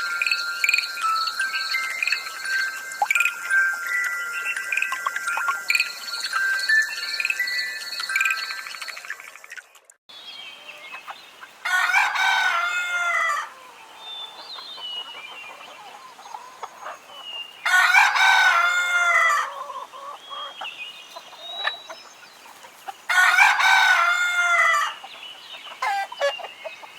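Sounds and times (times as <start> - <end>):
rooster crowing: 11.6 - 14.5, 15.5 - 20.6, 23.1 - 25.0
small bird chirps: 20.0 - 23.0.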